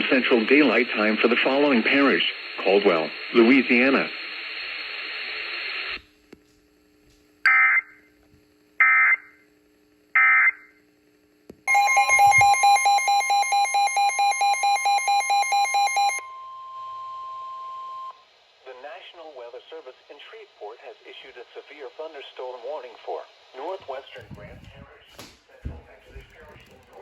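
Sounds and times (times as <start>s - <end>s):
digital data tone bursts: 11.7s - 16.4s
pulsing electronic alert tone: 11.7s - 16.5s
steady electronic tone: 11.7s - 18.1s.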